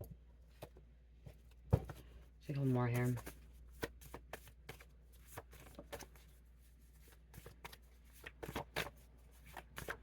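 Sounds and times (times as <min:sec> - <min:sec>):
cards being shuffled: 0:02.6 - 0:10.0.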